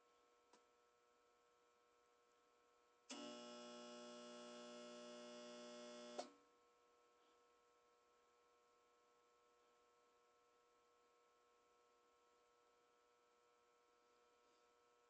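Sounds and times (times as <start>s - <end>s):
electrical hum-buzz: 3.1s - 6.3s.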